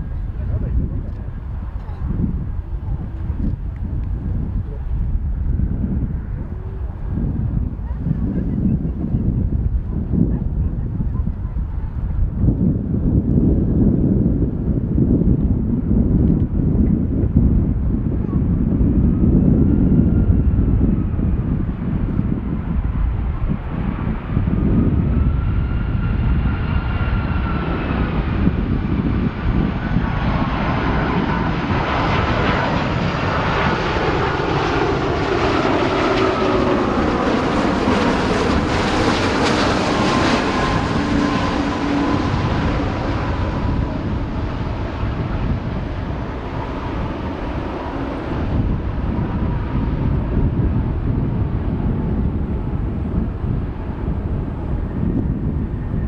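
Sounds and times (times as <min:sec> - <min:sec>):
jet engines roaring overhead: 0:00.0 - 0:56.0
wind rumble on microphone: 0:00.0 - 0:56.0
engine whine: 0:16.2 - 0:56.0.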